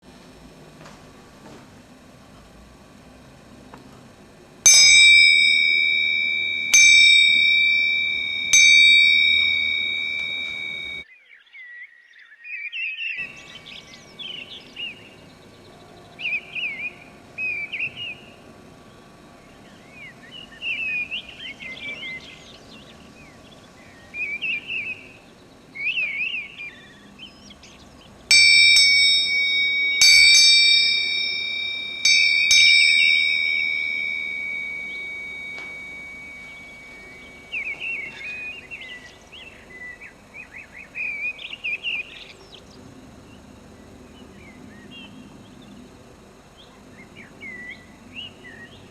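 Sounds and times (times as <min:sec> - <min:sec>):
handbell ringing: 0:04.7 - 0:11.0, 0:28.3 - 0:38.3
thrush singing: 0:04.7 - 0:11.0, 0:27.8 - 0:38.8.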